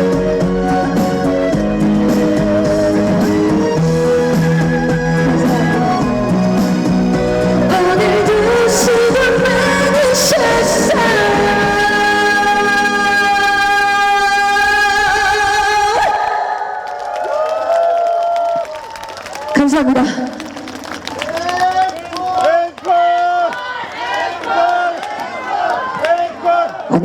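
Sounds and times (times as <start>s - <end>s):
band backing track: 0.0s - 16.1s
woman singing: 0.0s - 16.8s.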